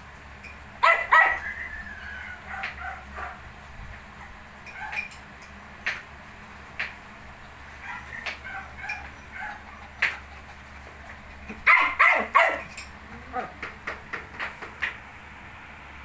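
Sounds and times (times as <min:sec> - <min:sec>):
puppies whimpering and squeaking: 0:00.4 - 0:03.4, 0:04.6 - 0:05.2, 0:07.5 - 0:13.9
puppies whining yelps: 0:00.8 - 0:03.4, 0:04.6 - 0:05.2, 0:07.6 - 0:13.8.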